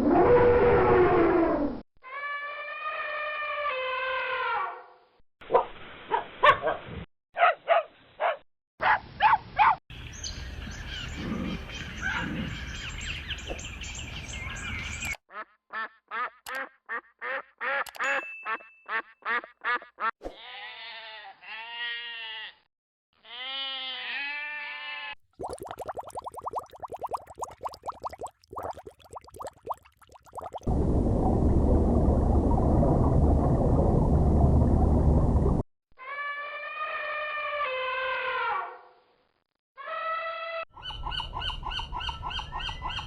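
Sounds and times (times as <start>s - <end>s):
small dogs barking: 7.4s - 9.8s.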